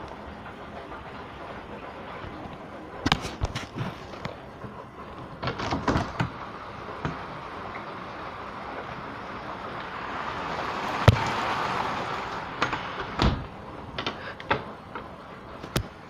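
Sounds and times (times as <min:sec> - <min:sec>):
sharp knocks and rattles: 0:00.0 - 0:09.0, 0:12.4 - 0:16.0
rain hissing: 0:00.0 - 0:16.0.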